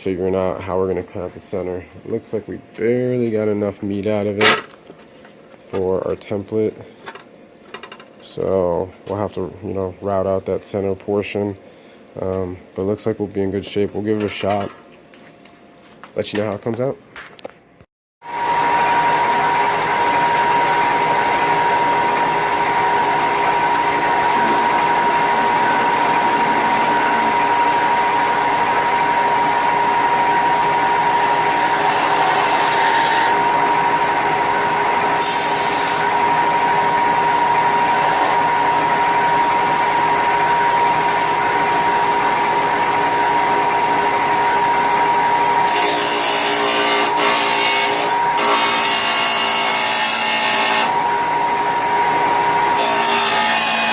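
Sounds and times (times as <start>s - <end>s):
electric sander whining: 18.3s - 32.3s.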